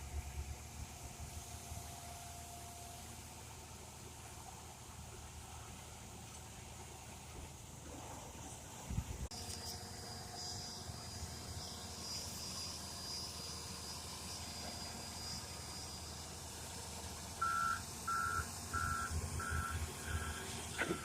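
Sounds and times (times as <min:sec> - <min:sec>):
excavator diesel engine running: 0:00.0 - 0:21.0
backup alarm beeps: 0:17.4 - 0:21.0.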